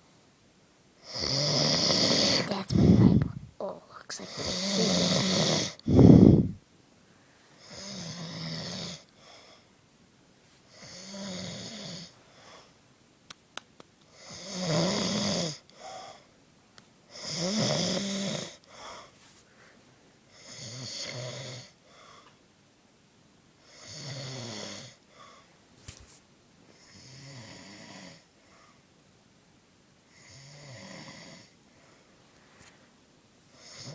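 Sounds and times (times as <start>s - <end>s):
man snoring: 1.0s - 3.2s, 4.3s - 6.6s, 7.6s - 9.0s, 10.8s - 12.1s, 14.2s - 15.6s, 17.1s - 18.6s, 20.4s - 21.7s, 23.7s - 25.0s, 26.9s - 28.2s, 30.2s - 31.5s, 33.6s - 33.9s.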